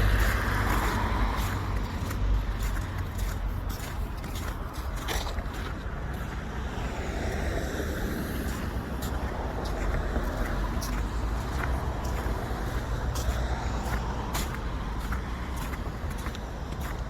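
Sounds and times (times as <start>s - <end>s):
car passing: 0.0s - 17.0s
footsteps in snow: 0.0s - 17.0s
steady urban hum: 0.0s - 17.0s.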